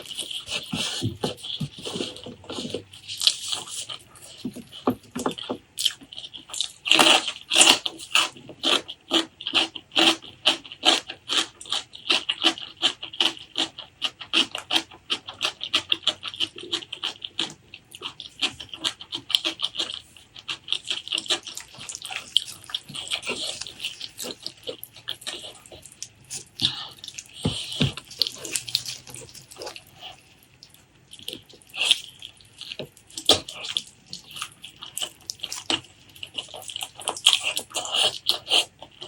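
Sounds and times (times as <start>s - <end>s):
open-mouth wet chewing: 0.0s - 39.0s.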